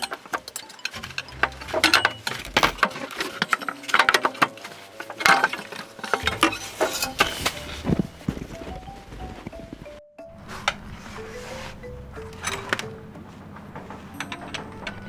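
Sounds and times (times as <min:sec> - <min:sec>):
metal tools clinking: 0:00.0 - 0:09.1, 0:10.6 - 0:15.0
faint background music: 0:00.0 - 0:15.0.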